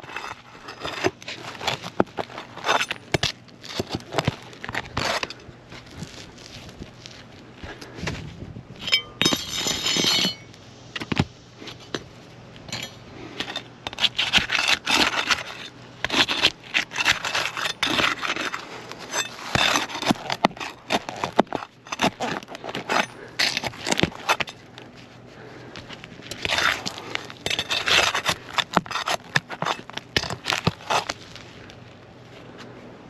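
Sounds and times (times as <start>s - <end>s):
tool scraping under shingles: 0.0s - 31.7s.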